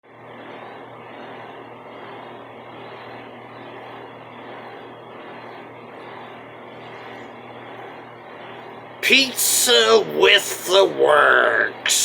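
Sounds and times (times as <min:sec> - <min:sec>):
constant low hum: 0:00.0 - 0:12.0
steady background noise: 0:00.1 - 0:12.0.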